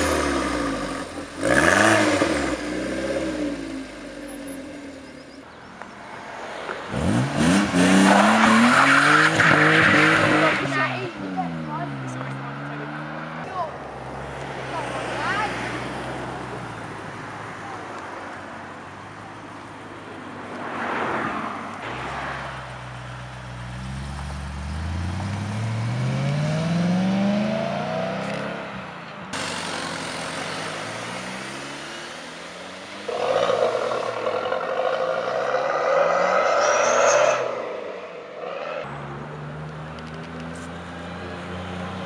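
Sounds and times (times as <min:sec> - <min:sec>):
cars accelerating past: 0:06.0 - 0:16.8, 0:20.4 - 0:42.0.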